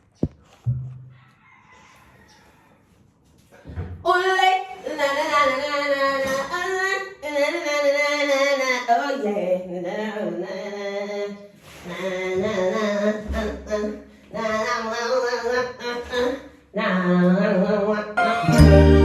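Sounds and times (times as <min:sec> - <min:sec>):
person singing warbling notes: 0:18.2 - 0:19.0.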